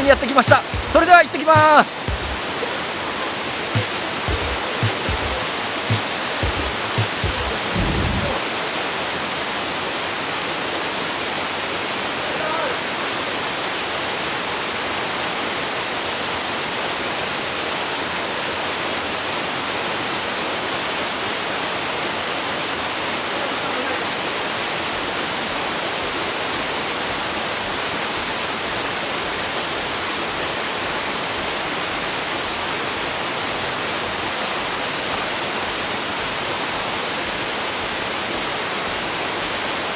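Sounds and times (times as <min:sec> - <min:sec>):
waterfall rushing: 0:00.0 - 0:09.4
low thumps: 0:03.8 - 0:08.4.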